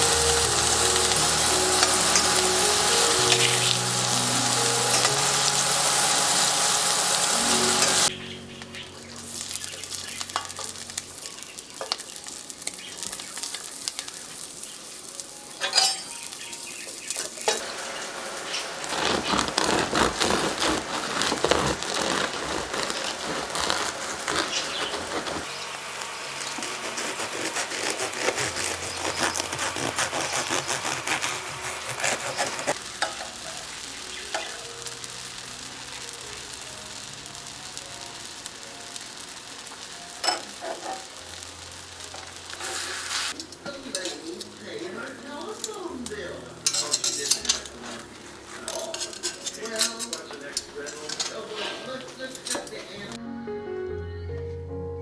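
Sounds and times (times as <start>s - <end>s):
food sizzling in a pan: 0.0s - 53.1s
background music: 0.0s - 55.0s
stirring with utensil clicks: 48.7s - 51.4s.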